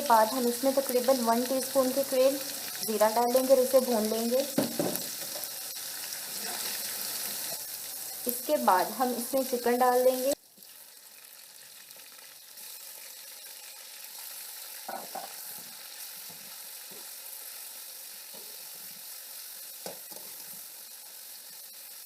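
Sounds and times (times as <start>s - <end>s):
chicken sizzling in oil: 0.0s - 22.0s.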